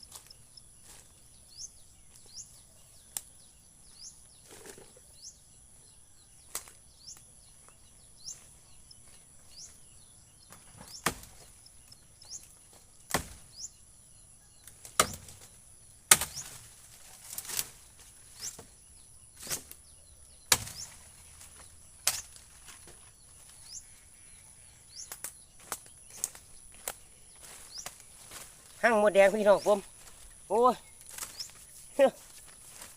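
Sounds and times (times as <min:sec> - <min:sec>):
blade chopping into wood: 0:10.9 - 0:11.4, 0:13.1 - 0:13.5, 0:14.9 - 0:15.4, 0:16.1 - 0:16.6, 0:20.5 - 0:20.9.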